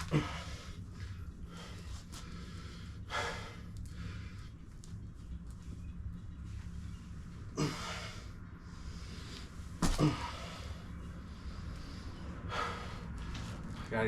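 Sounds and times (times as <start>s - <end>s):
man breathing hard: 0.0s - 4.8s, 7.5s - 13.9s
steady low hum: 0.0s - 14.0s.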